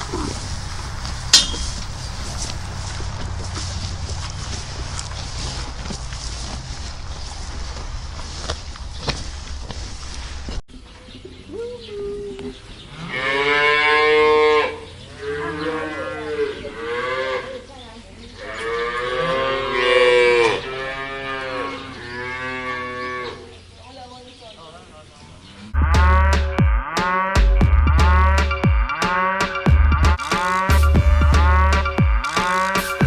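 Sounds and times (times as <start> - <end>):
cattle mooing: 18.5 - 23.4, 25.7 - 33.0.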